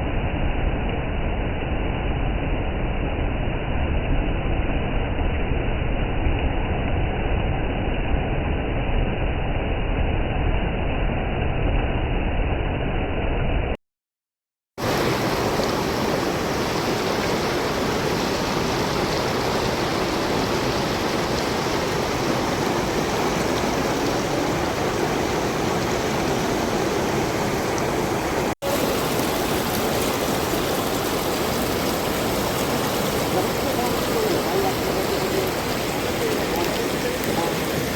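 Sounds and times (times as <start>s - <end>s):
river water rushing: 14.8s - 37.9s.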